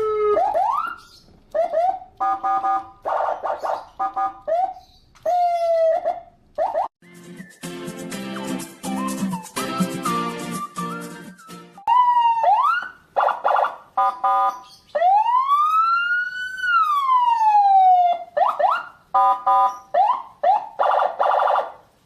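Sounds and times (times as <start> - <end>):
siren wail: 0.0 - 6.9, 11.9 - 21.8
siren whoops: 0.0 - 6.9, 11.8 - 21.8.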